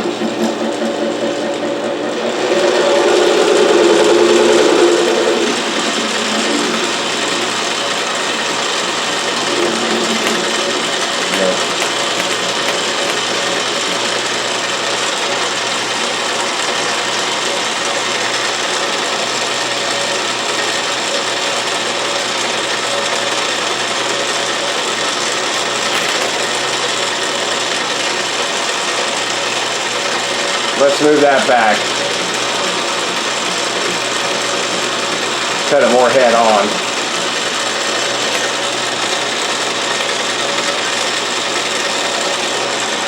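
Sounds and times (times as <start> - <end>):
lathe running: 0.0 - 43.0.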